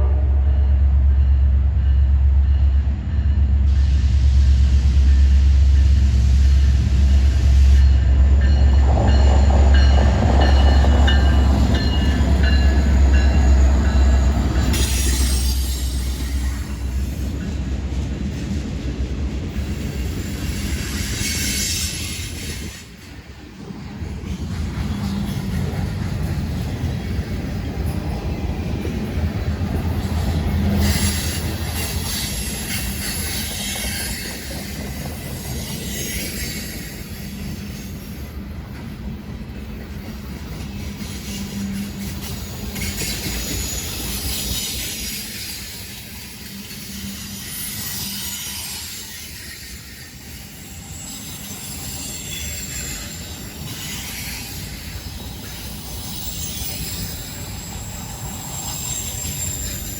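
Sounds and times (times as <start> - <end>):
freight train rumble: 0.0 - 59.9
train cars clattering over rails: 6.1 - 59.9
wheel squeal: 41.0 - 59.9.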